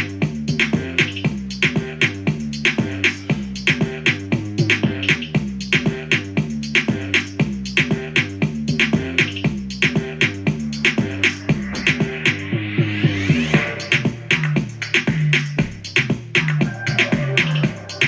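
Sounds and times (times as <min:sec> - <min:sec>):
steady drum beat: 0:00.0 - 0:12.5, 0:13.5 - 0:18.0
instrumental latin pop music: 0:00.0 - 0:18.0.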